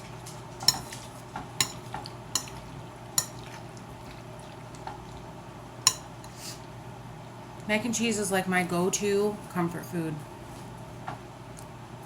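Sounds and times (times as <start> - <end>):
metal utensil scraping a bowl: 5.9 - 6.6.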